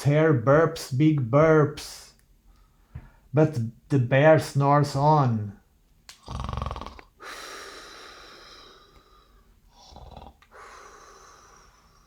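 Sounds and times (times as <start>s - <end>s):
person imitating bear snoring: 6.2s - 7.1s, 9.7s - 10.4s.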